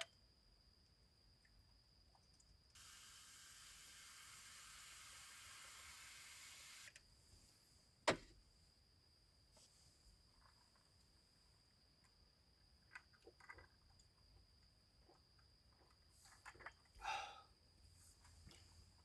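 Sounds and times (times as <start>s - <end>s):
steady hiss: 2.8s - 7.7s
sharp knock: 8.1s - 8.4s.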